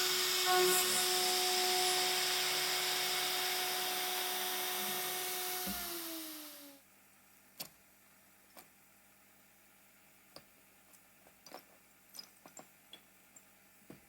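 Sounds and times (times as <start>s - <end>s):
mill spindle whining: 0.0s - 6.7s.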